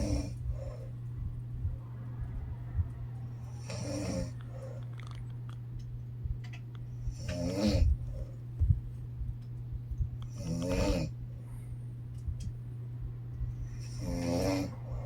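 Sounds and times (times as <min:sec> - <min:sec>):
woman snoring: 0:00.0 - 0:00.9, 0:03.3 - 0:04.8, 0:07.1 - 0:08.3, 0:10.3 - 0:11.1, 0:13.7 - 0:15.0
steady low hum: 0:00.0 - 0:15.0.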